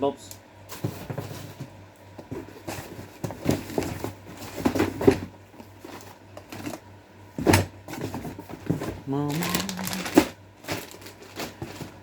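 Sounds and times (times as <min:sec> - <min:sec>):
packaging rustling: 0:08.0 - 0:12.0.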